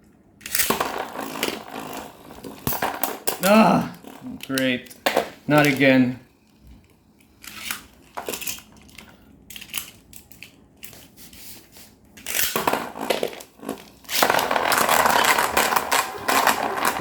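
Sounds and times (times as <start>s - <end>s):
spinning tops clicking and scraping: 0.4s - 6.0s, 12.2s - 17.0s
spinning tops grinding on plastic: 0.5s - 5.9s, 12.3s - 17.0s.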